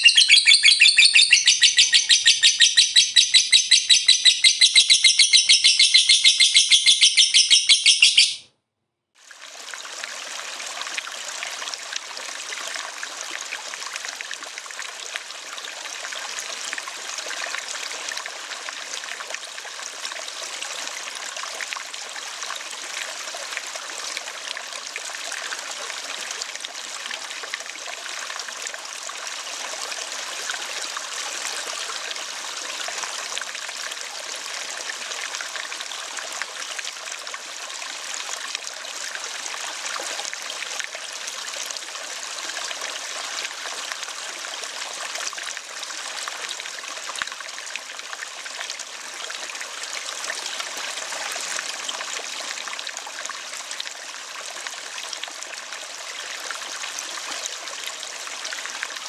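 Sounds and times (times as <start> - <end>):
lovebird chattering call: 0.0 - 8.4
trickling water: 0.0 - 8.4, 9.2 - 59.0.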